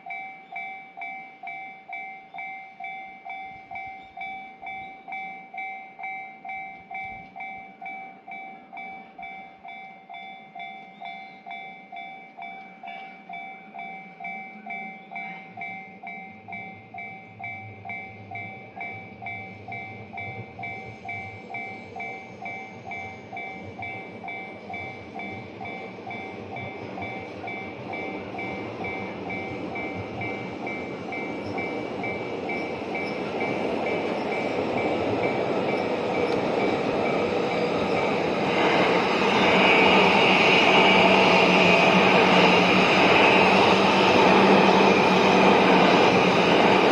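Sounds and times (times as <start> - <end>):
level-crossing bell two-tone ding: 0.0 - 38.1
train rumble: 12.2 - 46.9.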